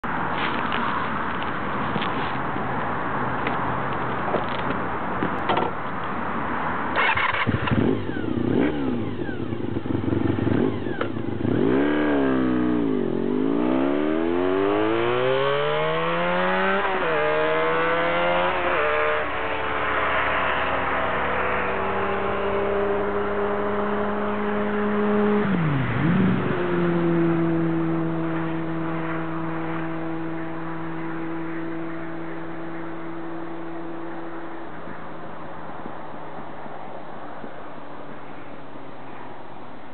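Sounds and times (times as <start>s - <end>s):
motorcycle engine revving: 6.9s - 35.0s.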